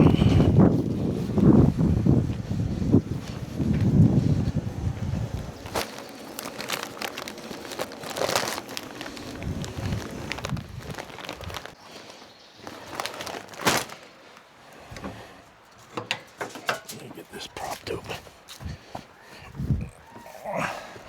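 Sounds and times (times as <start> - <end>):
bag crinkling and rustling: 5.4 - 14.4
briquettes clattering: 5.6 - 14.4.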